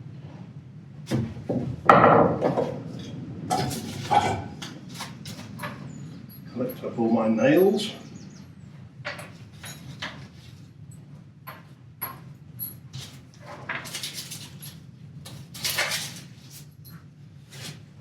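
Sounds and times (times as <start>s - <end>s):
nails pulled from wood scraping: 2.5s - 5.8s, 12.9s - 16.7s.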